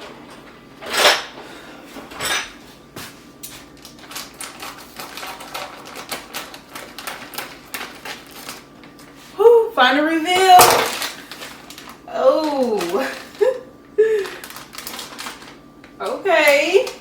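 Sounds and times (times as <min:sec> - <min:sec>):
plastic chip bag crackling: 0:03.7 - 0:09.2, 0:10.4 - 0:16.0.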